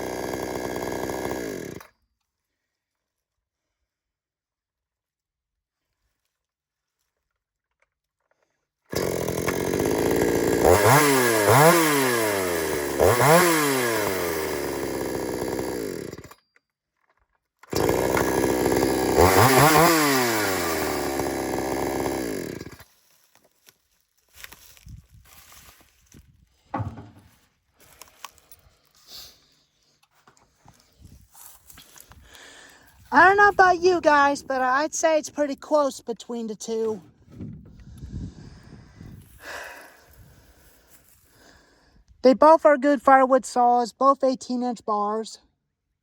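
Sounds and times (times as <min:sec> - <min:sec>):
chainsaw revving: 0:00.0 - 0:01.9, 0:08.9 - 0:16.4, 0:17.6 - 0:22.8, 0:33.1 - 0:35.8.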